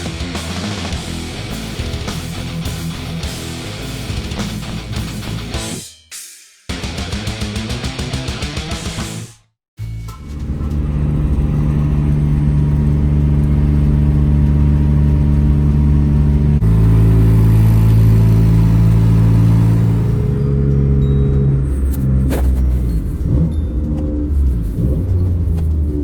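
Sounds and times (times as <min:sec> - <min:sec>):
loud droning car exhaust: 0:10.1 - 0:26.0.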